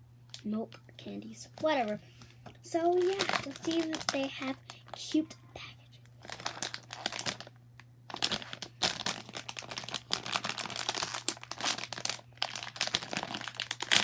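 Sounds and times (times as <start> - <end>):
candy wrapper crinkling: 2.8 - 5.2, 6.1 - 14.0.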